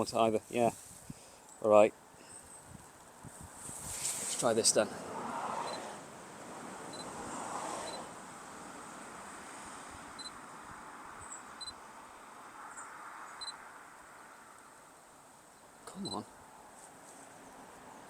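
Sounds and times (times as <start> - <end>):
faint outdoor hiss: 0.0 - 18.0
camera focus beep: 13.4 - 13.6.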